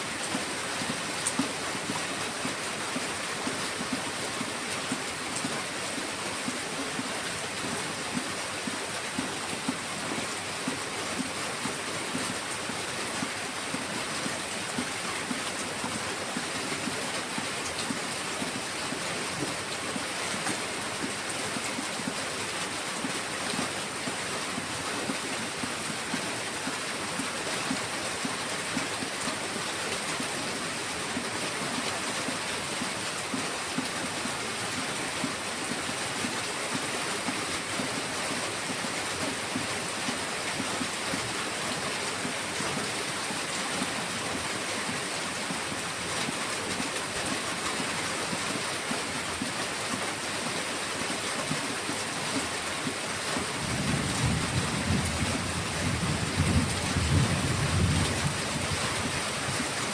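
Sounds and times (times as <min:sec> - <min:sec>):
heavy rain: 0:00.0 - 0:59.9.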